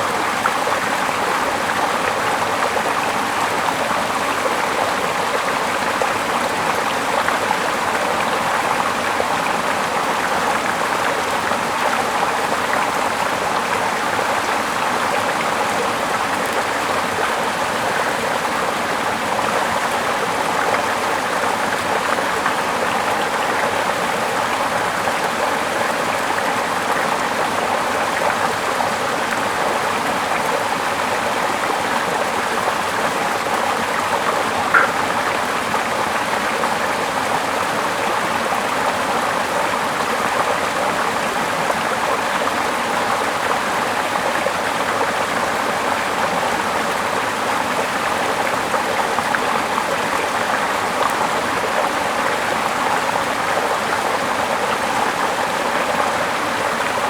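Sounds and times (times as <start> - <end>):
water rushing: 0.0 - 44.7.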